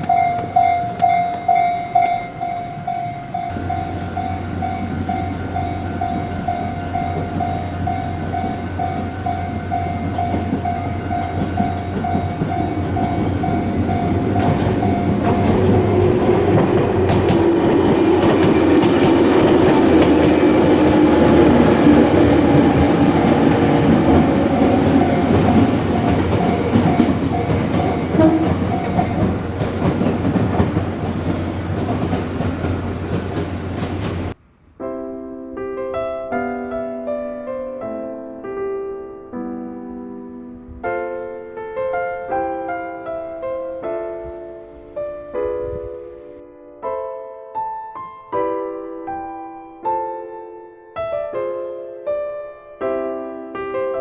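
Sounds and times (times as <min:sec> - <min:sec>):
electric train hum: 0:00.0 - 0:34.4
level crossing alarm ringing: 0:00.0 - 0:34.4
train wheel clatter: 0:00.0 - 0:34.4.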